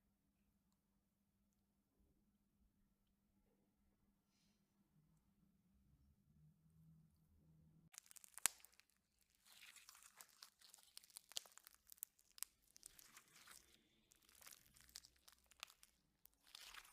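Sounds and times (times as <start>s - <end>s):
slime squeezed by hand: 8.0s - 16.9s.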